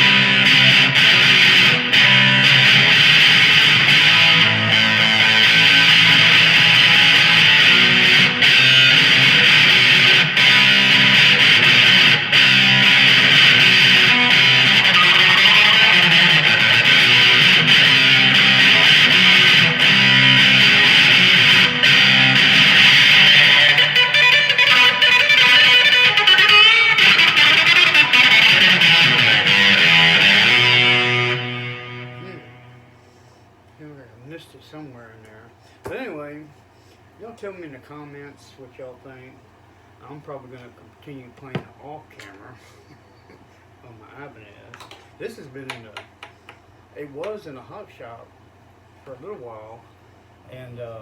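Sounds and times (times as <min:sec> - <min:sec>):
electric guitar riff: 0:00.0 - 0:33.4.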